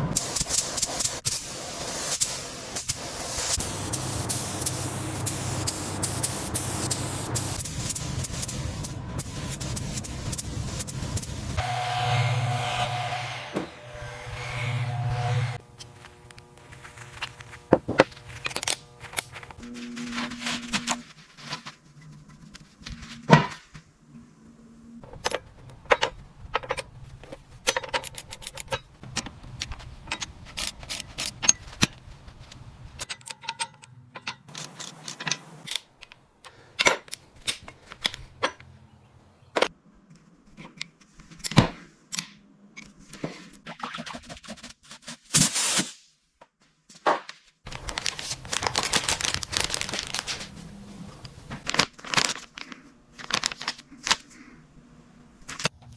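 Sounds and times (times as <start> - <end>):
steady hiss: 0.2 - 11.6.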